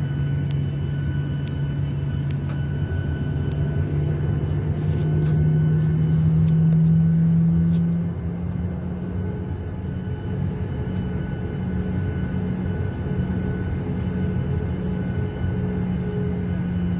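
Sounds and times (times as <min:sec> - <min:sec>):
jet engine rumble in cabin: 0:00.0 - 0:16.9.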